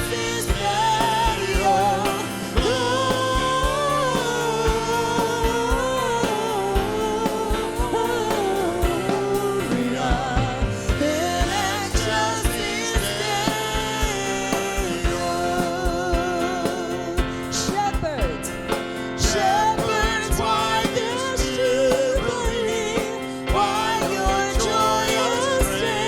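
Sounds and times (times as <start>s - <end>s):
singing hymn: 0.0s - 26.0s
worship band playing: 0.0s - 26.0s.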